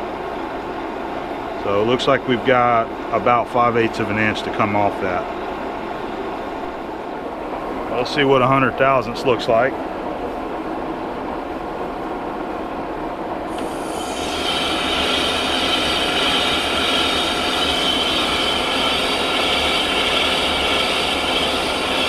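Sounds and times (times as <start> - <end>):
high cutting hiss: 13.5 - 22.0
metal lathe running: 13.5 - 22.0.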